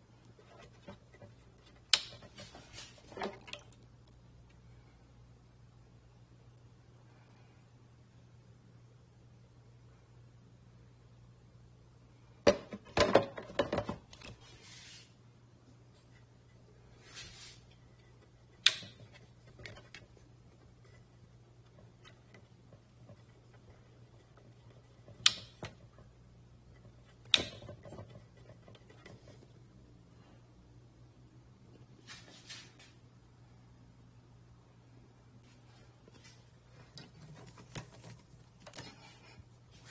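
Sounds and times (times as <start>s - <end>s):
faint low hum: 0.0s - 39.9s
sharp clicks and knocks: 18.2s - 29.5s.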